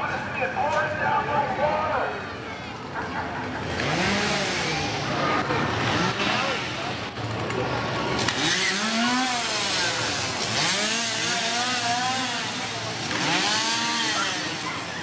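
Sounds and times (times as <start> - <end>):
chainsaws revving: 3.4 - 15.0.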